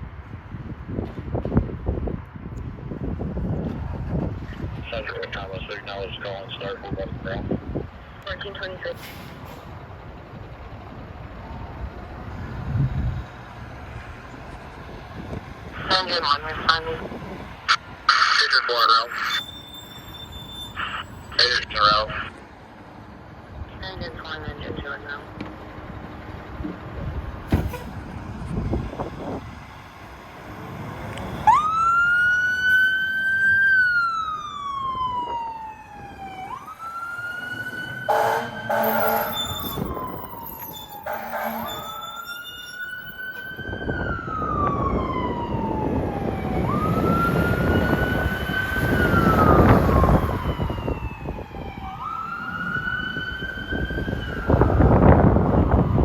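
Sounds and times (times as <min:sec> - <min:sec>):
truck engine and road noise: 0:00.0 - 0:56.0
fire engine siren wailing: 0:03.4 - 0:56.0
air horn blasts: 0:38.1 - 0:40.0, 0:41.0 - 0:42.5.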